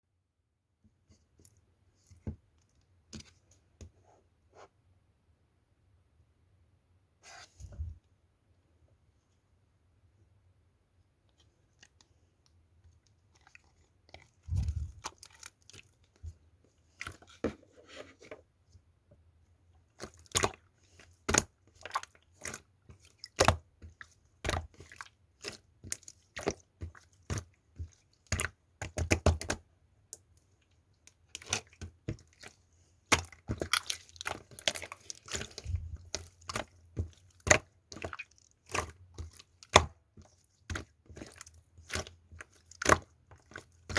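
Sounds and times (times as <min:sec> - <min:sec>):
crunchy slime crackling: 0:33.1 - 0:39.9.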